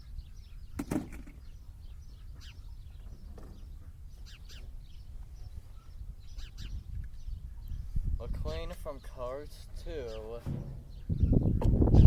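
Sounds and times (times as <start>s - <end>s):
birds chirping: 0.0s - 12.0s
sharp knock: 10.4s - 11.8s.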